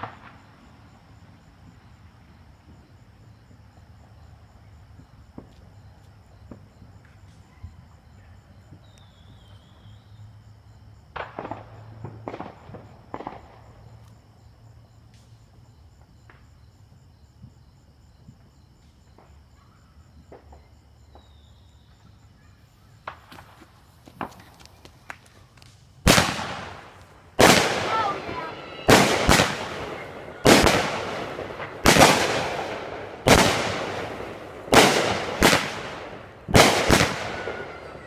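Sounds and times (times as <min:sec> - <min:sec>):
fireworks cracking and popping: 0:00.0 - 0:00.6, 0:11.1 - 0:14.2, 0:23.0 - 0:38.0.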